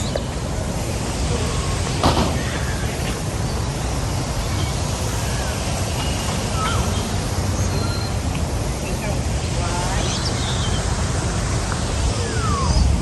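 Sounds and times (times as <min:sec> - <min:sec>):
outdoor rumble: 0:00.0 - 0:13.0
faint bird chirps: 0:01.5 - 0:08.2.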